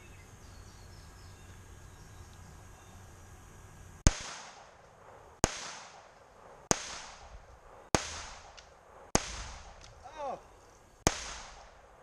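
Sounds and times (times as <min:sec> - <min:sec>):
pistol shots with echo: 0:04.1 - 0:09.8, 0:11.0 - 0:11.9.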